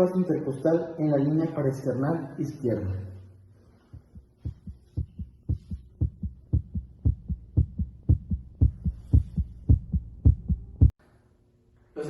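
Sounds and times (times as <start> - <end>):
faint steady hum: 0.0 - 12.0
heartbeat lub-dub: 3.8 - 11.0.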